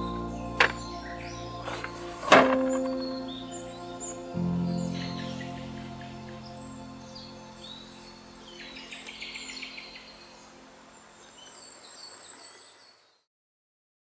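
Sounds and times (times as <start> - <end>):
background music: 0.0 - 11.4
small birds chirping: 0.0 - 13.2
faint steady hiss: 6.3 - 13.2.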